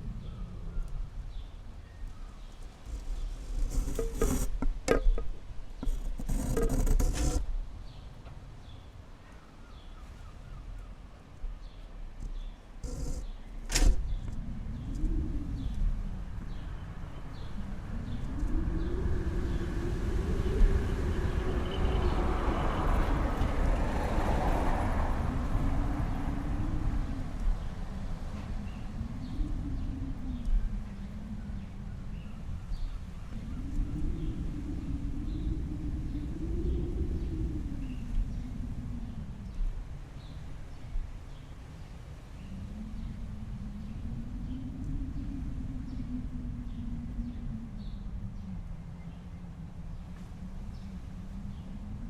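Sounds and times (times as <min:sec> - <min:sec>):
low rumble: 0:11.0 - 0:52.0.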